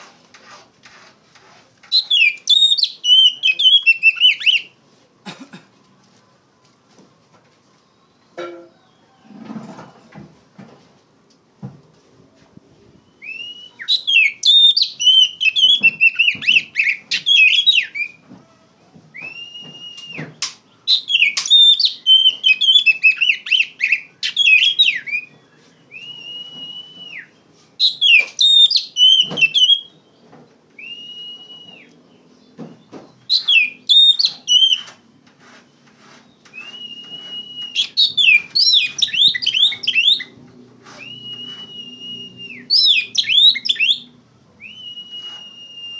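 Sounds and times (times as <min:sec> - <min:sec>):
songbird whistling and trilling: 0:01.9 - 0:04.7, 0:13.0 - 0:18.2, 0:19.2 - 0:30.2, 0:30.8 - 0:32.5, 0:33.3 - 0:35.0, 0:36.3 - 0:40.4, 0:41.0 - 0:45.9.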